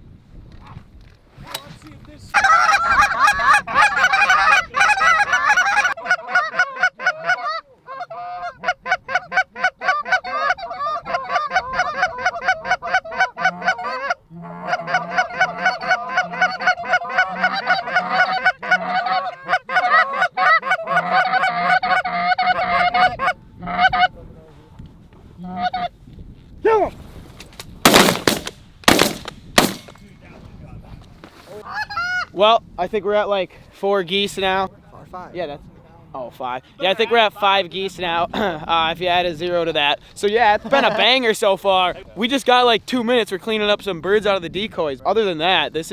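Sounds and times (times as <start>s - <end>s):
goose honking: 2.4s - 12.2s, 12.8s - 23.9s.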